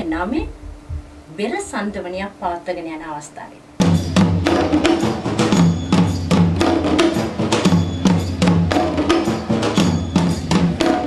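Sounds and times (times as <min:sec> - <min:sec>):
drums in fast rhythm: 0:03.8 - 0:11.0.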